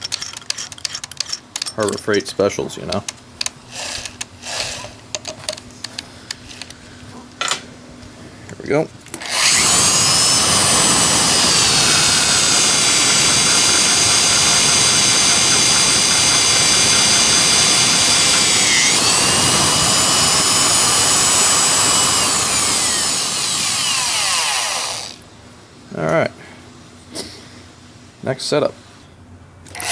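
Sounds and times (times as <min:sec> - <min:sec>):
electric drill boring through steel: 0:03.7 - 0:05.0, 0:09.2 - 0:25.2.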